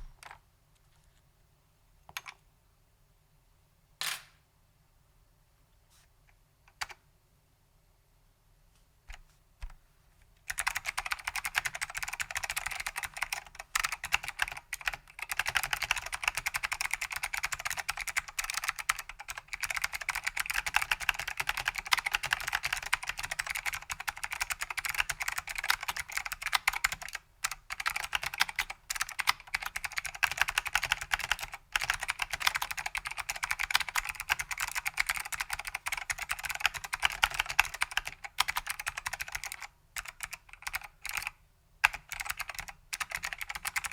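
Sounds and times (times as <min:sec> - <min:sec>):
fast typing on clicky keyboard: 0:10.5 - 0:43.9.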